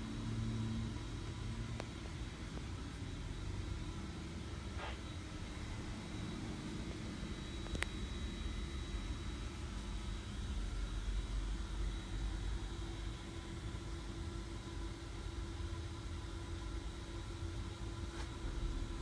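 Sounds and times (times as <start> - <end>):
faint constant hum: 0.0 - 19.0
low mechanical rumble: 18.2 - 19.0.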